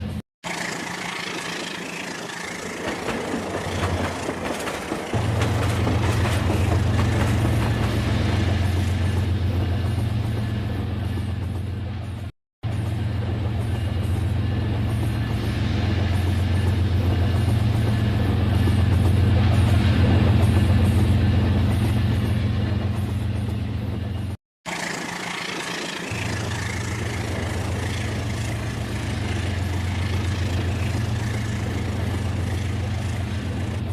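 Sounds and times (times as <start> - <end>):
toy train motor hum and rattle: 24.7 - 33.3.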